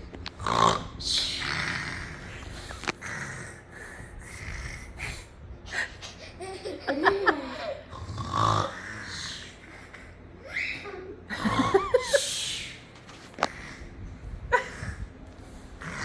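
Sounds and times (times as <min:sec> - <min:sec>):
person fake snoring: 0:00.4 - 0:04.9, 0:07.9 - 0:09.6
person laughing: 0:11.3 - 0:12.4.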